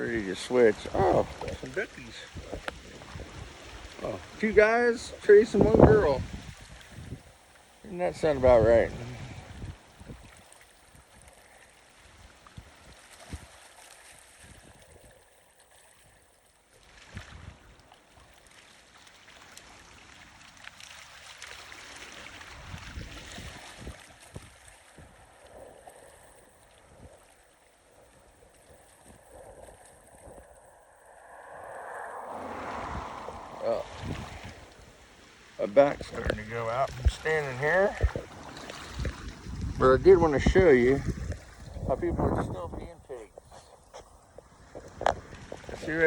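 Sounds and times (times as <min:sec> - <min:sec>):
wind buffeting microphone: 0:00.0 - 0:07.4, 0:08.1 - 0:11.2, 0:17.1 - 0:17.7, 0:22.4 - 0:25.4, 0:28.1 - 0:46.0
river water and small waves: 0:00.0 - 0:46.0.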